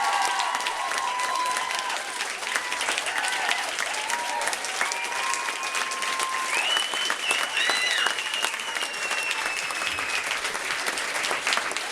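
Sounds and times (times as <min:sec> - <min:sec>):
audience applauding: 0:00.0 - 0:11.9
high whistles: 0:06.3 - 0:10.4.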